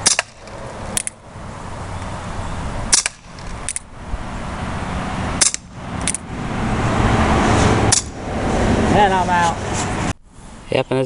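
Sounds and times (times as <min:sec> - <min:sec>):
bb revolver shots: 0:00.0 - 0:01.2, 0:02.9 - 0:03.9.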